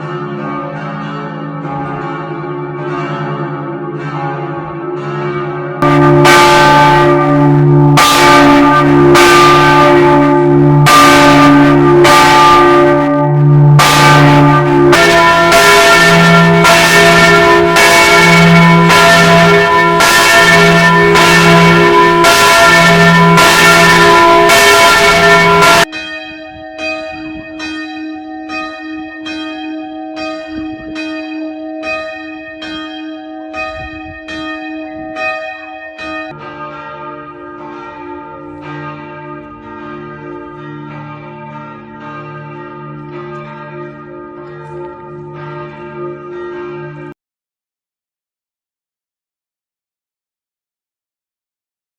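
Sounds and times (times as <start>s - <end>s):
church bells ringing: 0.0s - 47.2s
higher-pitched bell strikes: 5.8s - 36.6s.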